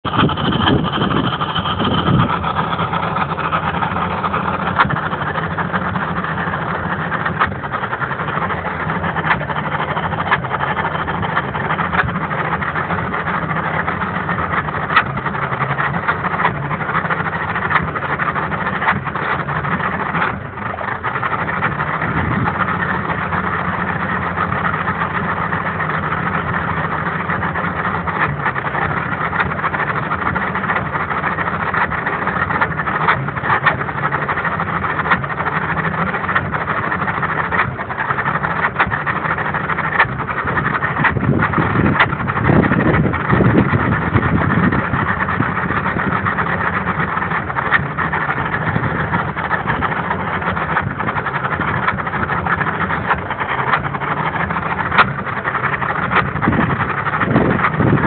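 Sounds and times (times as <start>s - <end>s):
outboard motor idling rough: 0.0s - 58.0s.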